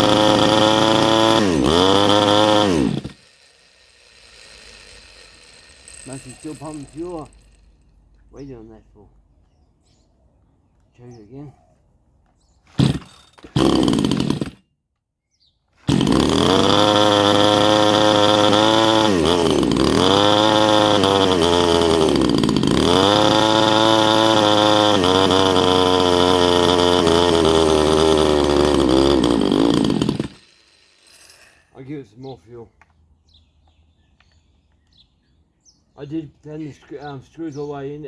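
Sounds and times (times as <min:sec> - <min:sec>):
chainsaw engine revving: 0:00.0 - 0:07.9, 0:12.7 - 0:14.6, 0:15.8 - 0:32.0.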